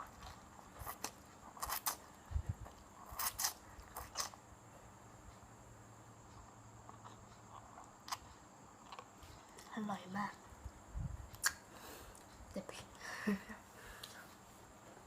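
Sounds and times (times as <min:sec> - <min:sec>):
crackly bites: 0:00.0 - 0:04.4.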